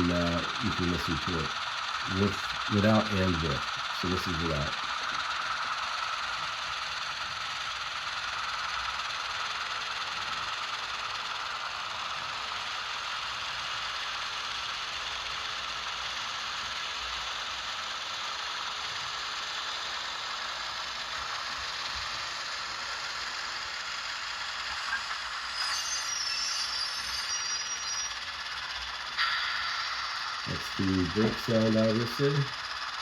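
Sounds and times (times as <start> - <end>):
diesel engine sound from small speaker: 0.0 - 33.0
high squealing brake sound: 24.7 - 32.3.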